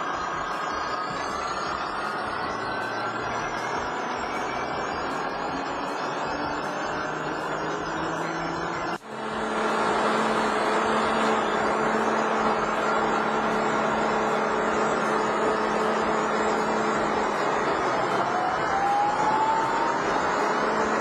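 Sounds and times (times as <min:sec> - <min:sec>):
grain vacuum machine running: 0:09.0 - 0:21.0.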